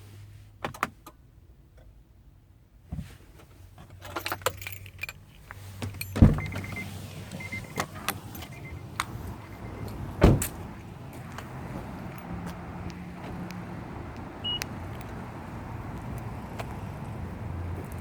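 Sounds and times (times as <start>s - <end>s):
keys jingling: 3.9s - 6.8s, 11.3s - 13.4s, 14.1s - 16.5s.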